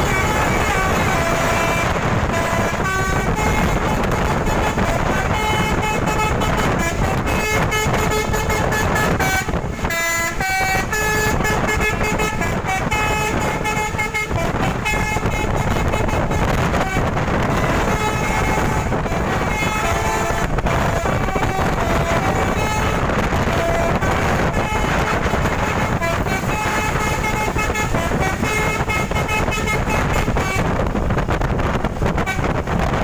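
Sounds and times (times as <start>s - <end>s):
multi-tone bus horn melody: 0.0s - 33.0s
wind and road noise: 0.0s - 33.0s.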